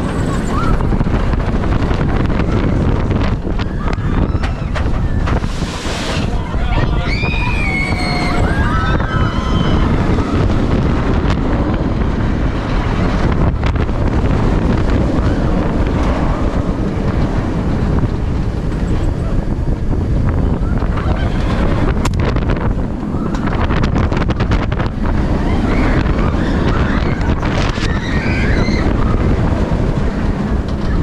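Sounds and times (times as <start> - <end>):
wind rushing over microphone: 0.0 - 31.0
high cries: 6.4 - 10.0.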